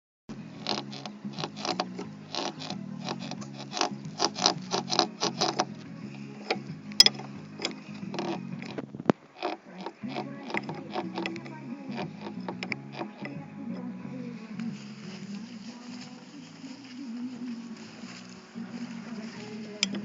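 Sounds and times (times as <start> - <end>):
strut mount creaking squeaks: 0.6 - 14.0, 19.8 - 20.0
sharp click: 6.4 - 13.4.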